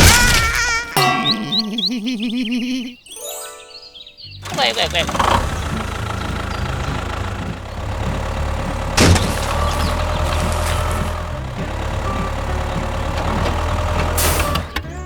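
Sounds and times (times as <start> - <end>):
tractor engine idling: 4.0 - 15.0.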